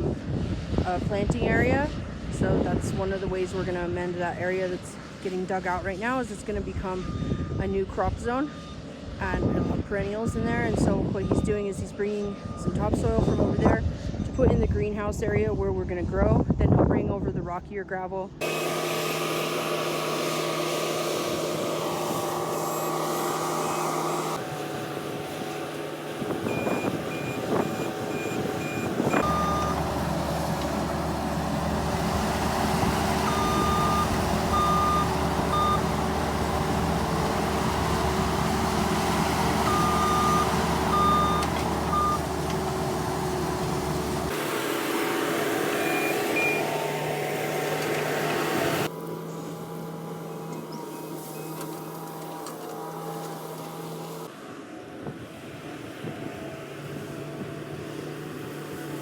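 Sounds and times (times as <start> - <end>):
skid steer engine running: 18.4 - 59.0.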